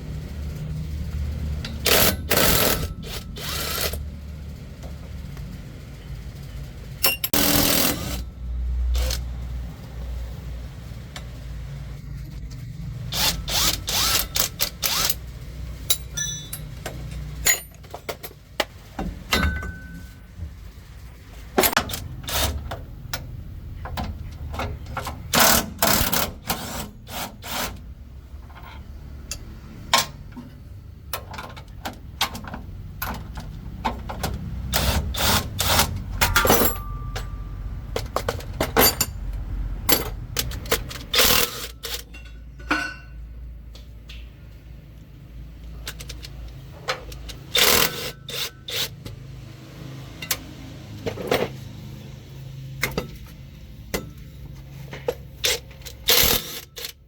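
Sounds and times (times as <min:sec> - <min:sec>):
metal knocks and clanks: 0:15.9 - 0:20.6.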